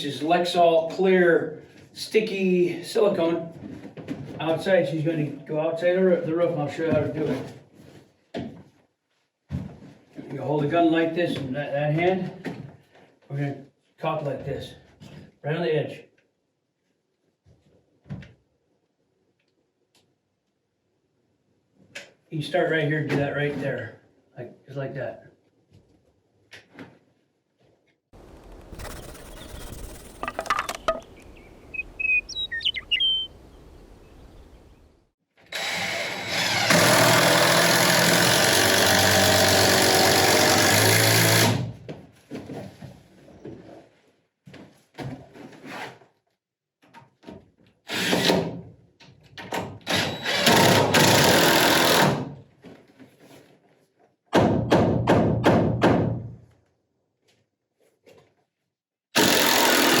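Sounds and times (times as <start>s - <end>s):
power tool motor running: 28.7s - 30.7s, 35.5s - 41.6s, 49.9s - 52.2s, 59.2s - 60.0s.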